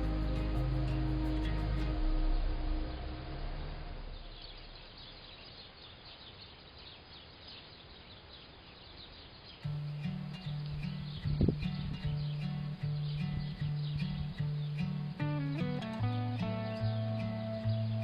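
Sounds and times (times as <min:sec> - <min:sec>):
soft music: 0:00.0 - 0:04.7, 0:09.7 - 0:18.0
outdoor hiss: 0:00.0 - 0:18.0
flock of birds chirping: 0:04.0 - 0:18.0.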